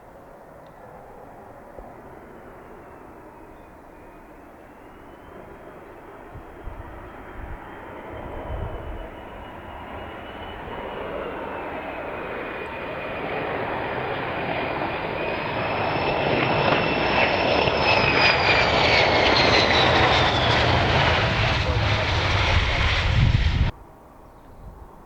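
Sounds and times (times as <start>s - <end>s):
jet aircraft passing: 0.4s - 23.8s.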